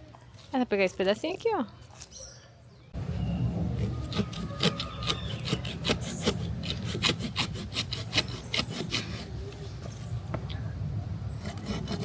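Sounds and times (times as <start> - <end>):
hand saw cutting wood: 3.7 - 9.3, 11.4 - 12.0.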